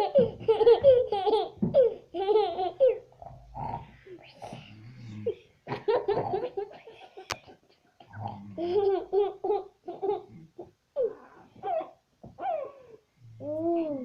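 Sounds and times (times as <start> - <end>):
rasping snore imitations: 3.2 - 5.4, 8.1 - 8.6.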